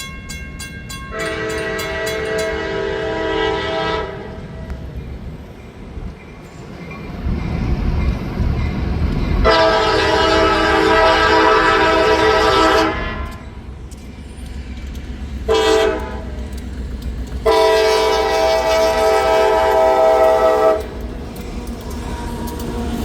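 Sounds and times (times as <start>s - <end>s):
train rumbling: 0.0s - 23.0s
locomotive air horn: 1.1s - 4.6s, 9.4s - 13.5s, 15.5s - 16.3s, 17.4s - 21.0s.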